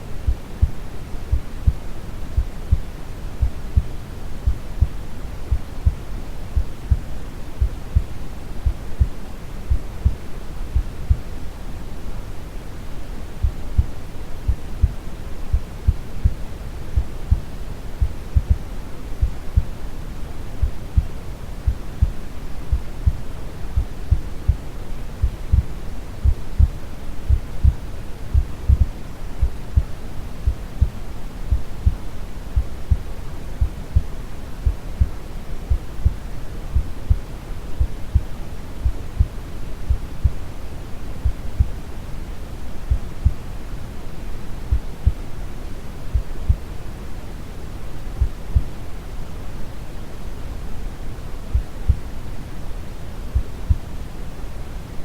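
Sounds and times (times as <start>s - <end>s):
brown noise hiss: 0.0s - 55.0s
heartbeat thumping: 0.2s - 1.8s, 2.4s - 6.0s, 6.6s - 11.3s, 13.4s - 16.4s, 17.0s - 19.8s, 20.6s - 24.6s, 25.2s - 32.0s, 32.6s - 36.2s, 36.8s - 40.4s, 44.7s - 45.2s, 46.1s - 46.7s, 53.4s - 53.8s.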